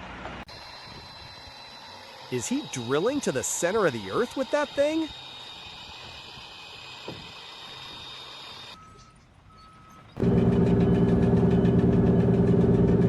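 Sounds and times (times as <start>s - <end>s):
steady hiss: 0.5s - 8.8s
loud engine running: 10.2s - 13.0s.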